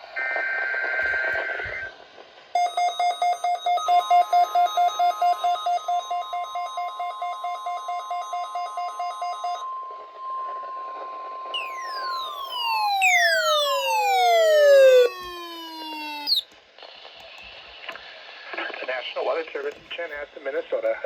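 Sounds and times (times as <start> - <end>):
fast pulsing beeps: 2.6 - 16.4
steady warning alarm tone: 2.6 - 16.4
falling siren-like sweeps: 9.5 - 16.4.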